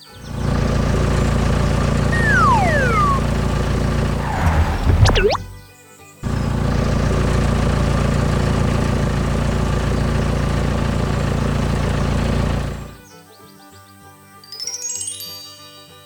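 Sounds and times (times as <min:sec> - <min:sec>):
engine idling: 0:06.3 - 0:13.0.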